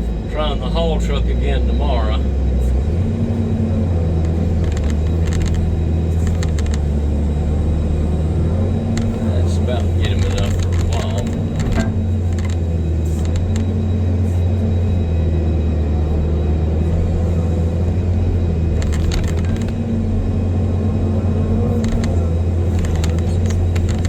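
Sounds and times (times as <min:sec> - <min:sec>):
excavator diesel engine droning: 0:00.0 - 0:24.0
machine knocks and rattles: 0:10.2 - 0:12.6.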